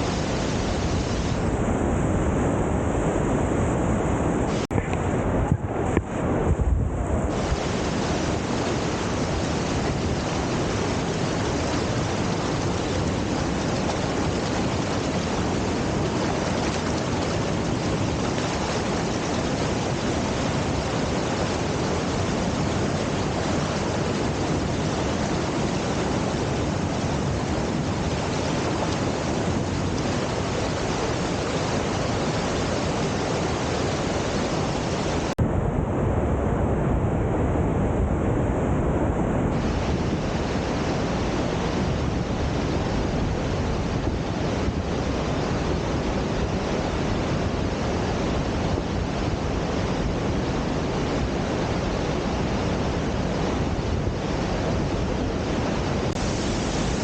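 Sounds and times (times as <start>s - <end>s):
waterfall rushing: 0.0s - 1.5s, 7.3s - 35.4s, 54.7s - 57.0s.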